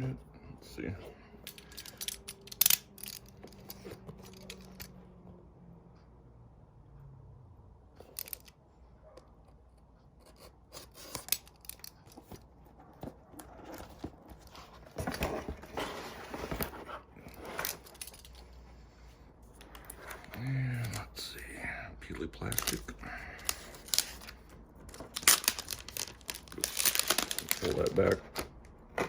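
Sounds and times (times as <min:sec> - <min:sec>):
scraping and rustling: 0:10.4 - 0:21.2, 0:22.4 - 0:29.0
cardboard packaging being handled: 0:12.1 - 0:18.4, 0:23.4 - 0:29.0.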